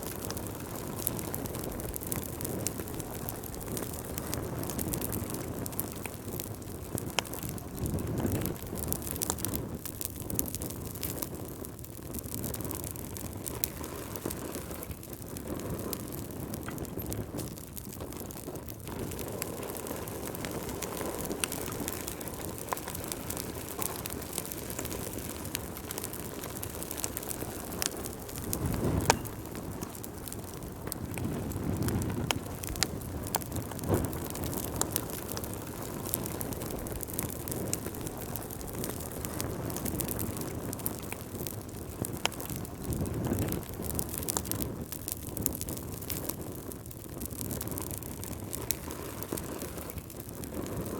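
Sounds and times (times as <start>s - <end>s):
fire crackling and popping: 0.0s - 50.9s
fire flames rushing: 0.0s - 50.9s.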